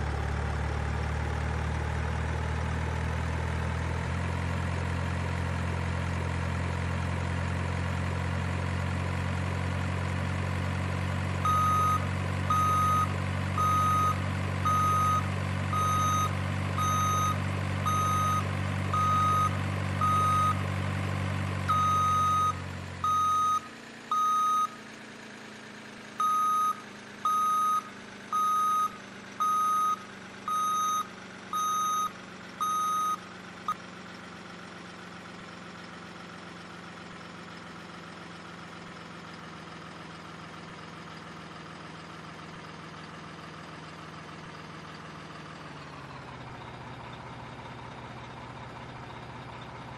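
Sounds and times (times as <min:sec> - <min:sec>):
low steady engine idle: 0:00.0 - 0:49.9
reversing beeper: 0:11.4 - 0:20.7, 0:21.7 - 0:24.8, 0:26.2 - 0:33.2.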